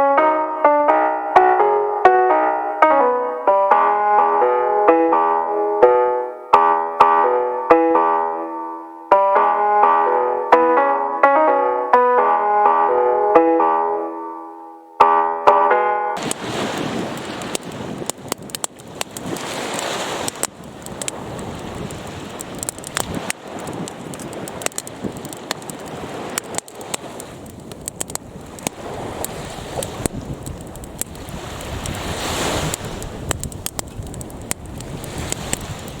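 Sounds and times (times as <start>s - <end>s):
fire burning with rushing noise: 16.2s - 36.0s
fire crackling and popping: 16.2s - 36.0s.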